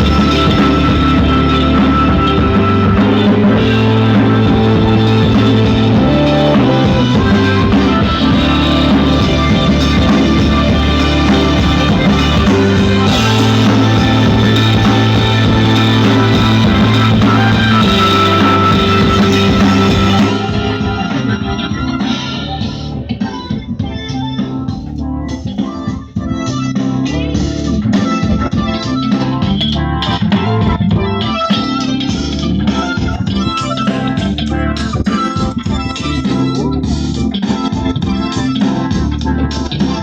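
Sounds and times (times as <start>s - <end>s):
loud rock music with guitar and drums: 0.0s - 24.6s.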